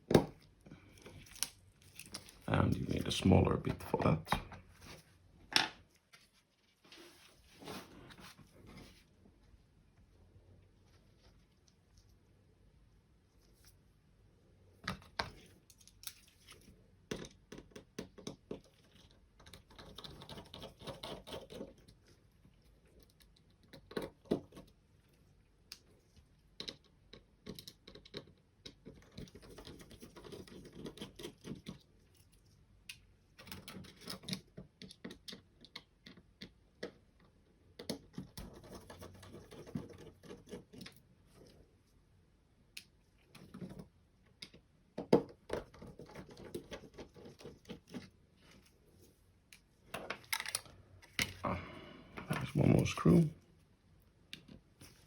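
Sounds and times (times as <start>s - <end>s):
small plastic parts handled: 0.3s - 2.9s, 42.8s - 51.4s.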